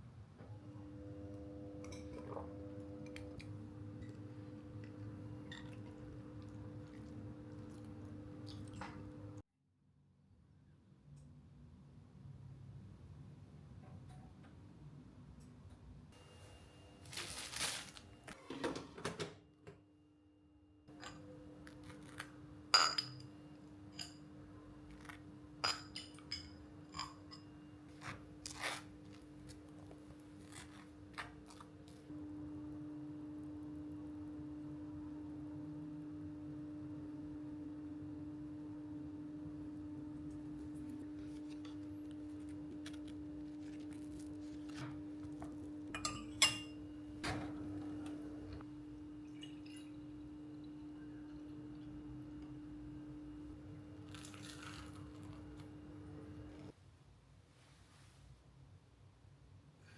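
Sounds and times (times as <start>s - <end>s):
dishes and cutlery clinking: 1.8s - 2.5s, 45.9s - 47.9s
steady low hum: 29.0s - 56.8s.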